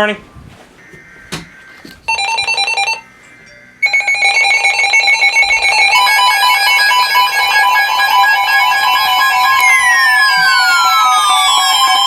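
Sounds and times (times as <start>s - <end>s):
rapid high beeping: 2.1s - 12.0s
second electronic alarm pattern: 2.1s - 12.0s
fast-pulsing electronic alarm: 3.8s - 12.0s.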